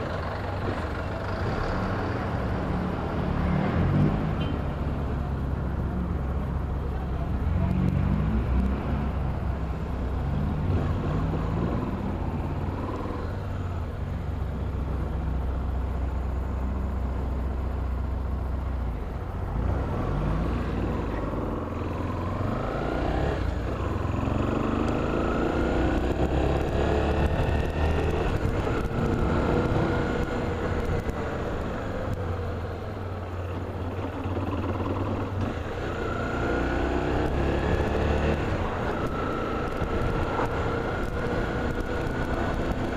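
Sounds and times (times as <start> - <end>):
road rumble: 0.0 - 42.9
vehicle engine revving: 19.4 - 32.8, 33.8 - 42.9.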